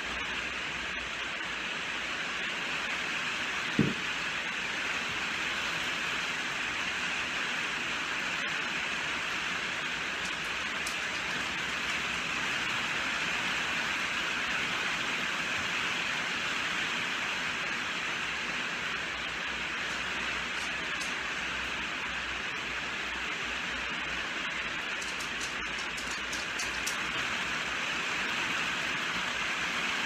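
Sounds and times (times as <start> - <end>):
steady rainfall: 0.0 - 30.0
short low thump: 3.8 - 4.0.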